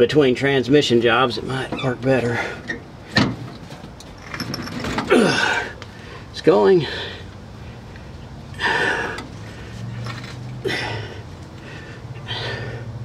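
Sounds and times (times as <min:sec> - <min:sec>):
man breathing hard: 0:05.2 - 0:07.9, 0:08.5 - 0:10.0, 0:10.6 - 0:13.0.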